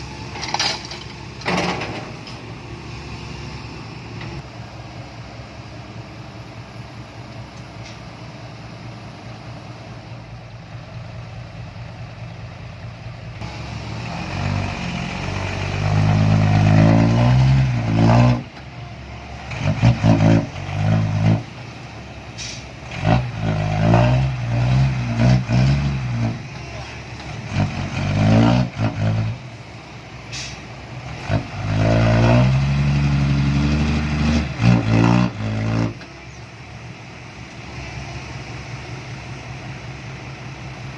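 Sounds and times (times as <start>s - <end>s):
excavator diesel engine revving: 10.8s - 40.9s.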